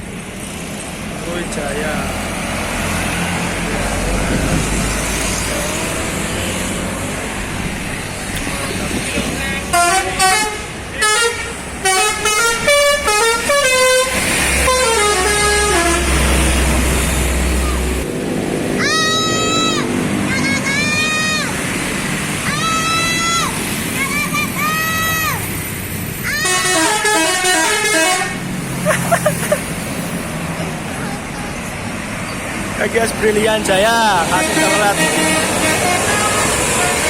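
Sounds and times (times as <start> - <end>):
bus engine rumbling: 0.0 - 37.0
bus musical air horn melody: 9.6 - 16.9, 26.3 - 28.5, 34.3 - 37.0.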